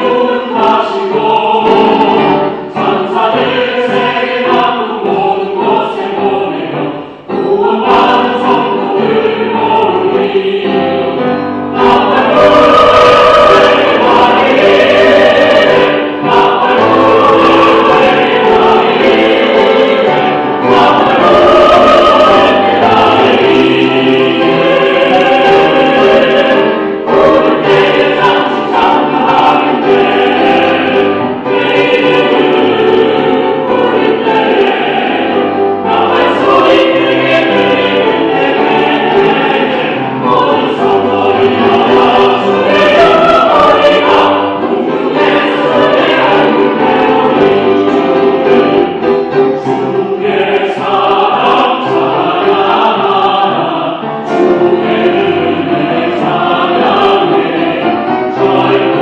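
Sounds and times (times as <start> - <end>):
choir singing a hymn: 0.0 - 59.0.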